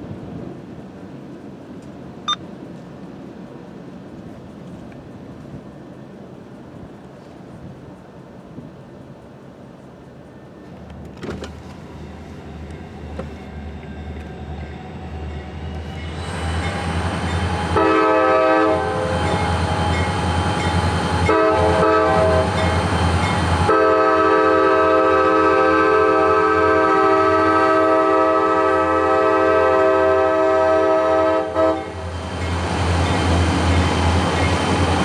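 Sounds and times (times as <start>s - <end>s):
locomotive horn blasts: 17.6s - 20.1s, 21.2s - 22.7s, 23.6s - 32.0s.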